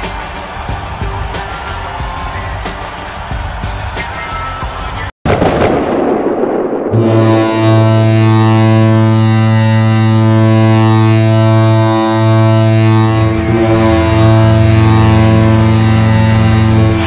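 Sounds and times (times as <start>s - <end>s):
goal horn low steady note: 7.0s - 17.0s.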